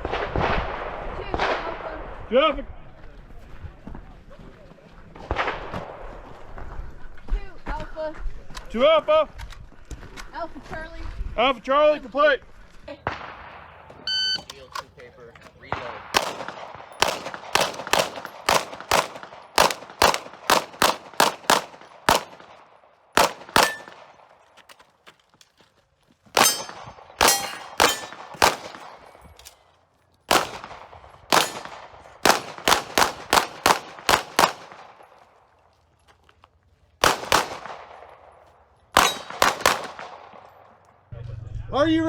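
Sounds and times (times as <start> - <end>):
pistol shots: 15.6 - 24.4, 26.4 - 29.7, 30.3 - 35.2, 37.0 - 40.8
metallic ring: 26.4 - 28.2.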